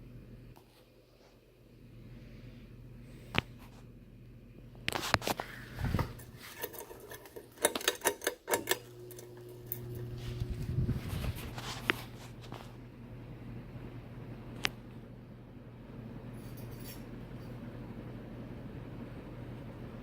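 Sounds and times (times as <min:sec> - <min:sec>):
ceiling fan motor hum: 0:00.0 - 0:20.0
sharp clicks and rattles: 0:05.9 - 0:10.0.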